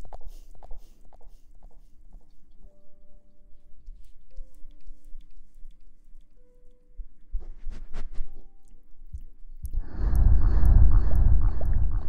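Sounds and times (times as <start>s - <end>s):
soft background music: 0.0s - 12.0s
faint ticks: 3.8s - 6.9s
low steady rumble: 9.1s - 12.0s.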